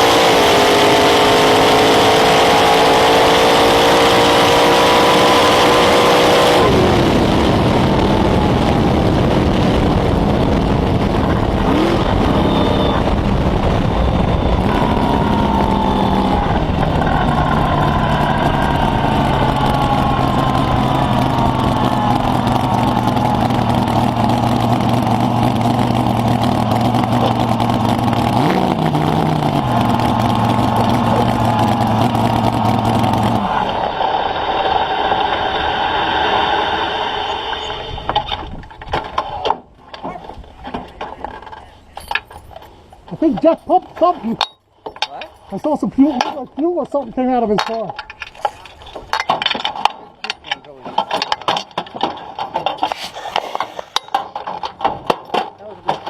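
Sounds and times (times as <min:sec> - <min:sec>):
drag racing car engine revving: 0:00.0 - 0:38.1.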